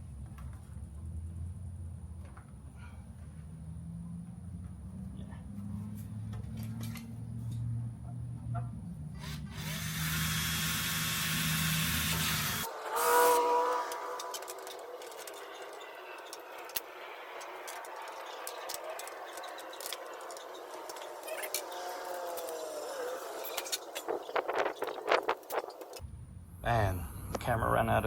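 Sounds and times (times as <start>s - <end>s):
cordless drill running: 9.2s - 13.4s.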